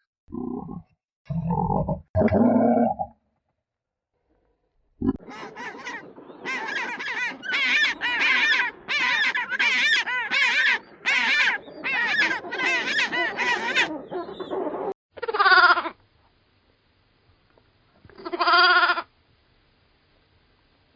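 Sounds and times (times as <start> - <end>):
fowl calling: 5.2 - 15.8.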